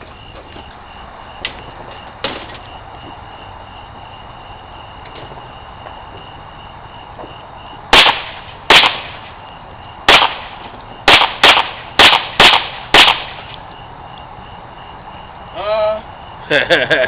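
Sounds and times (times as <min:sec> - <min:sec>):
gunshots with echo: 0:07.9 - 0:09.3, 0:10.1 - 0:13.5.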